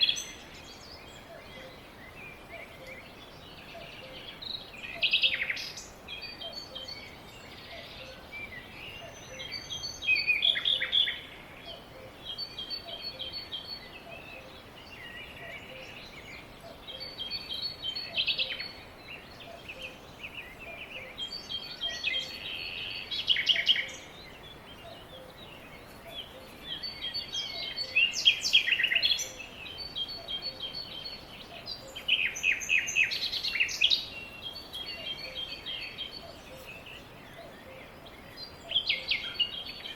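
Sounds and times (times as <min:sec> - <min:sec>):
birds chirping: 0:00.0 - 0:39.9
faint background noise: 0:00.0 - 0:39.9.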